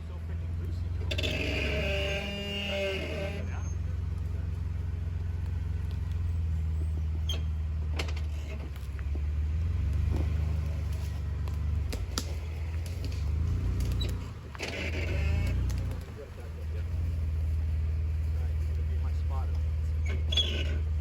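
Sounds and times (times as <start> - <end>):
off-road vehicle engine running low: 0.0 - 21.0
sharp knocks and clicks: 7.4 - 16.2.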